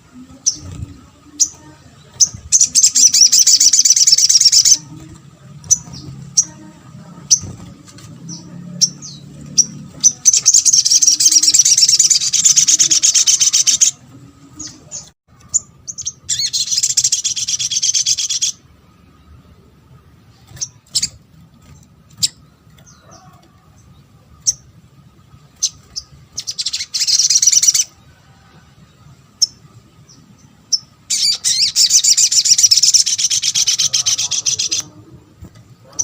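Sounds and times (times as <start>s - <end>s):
bird chattering trills: 0.3s - 14.0s, 14.6s - 18.7s, 25.5s - 28.0s, 30.7s - 35.0s
sharp bird chirps: 25.5s - 27.9s.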